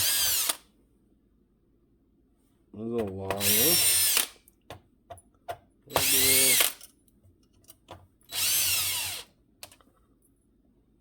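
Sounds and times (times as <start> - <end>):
electric screwdriver whine: 0.0 - 0.6, 8.3 - 9.3.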